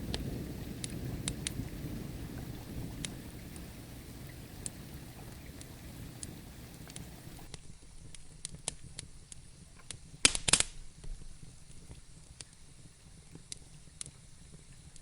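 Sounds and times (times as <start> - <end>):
crackling wood fire: 0.0 - 7.5
fire popping sharply: 0.0 - 7.5
thunder rumble: 0.0 - 7.5.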